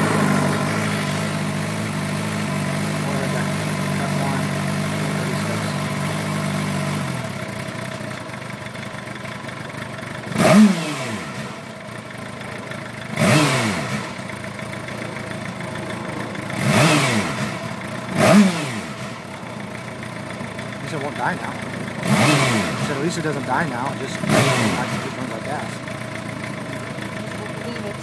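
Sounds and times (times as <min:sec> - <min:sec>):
motorcycle engine idling rough and revving: 0:00.0 - 0:28.0.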